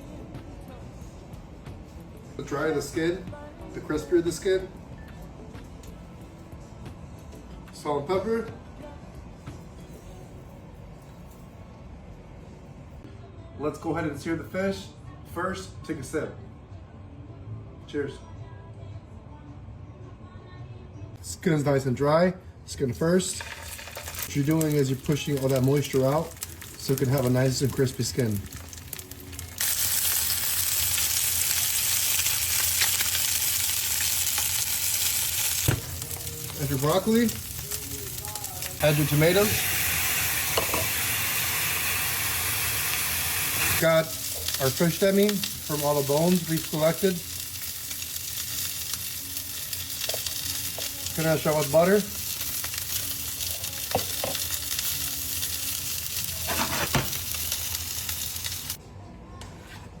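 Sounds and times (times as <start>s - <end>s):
fish fillet sizzling in hot oil: 23.4s - 58.8s.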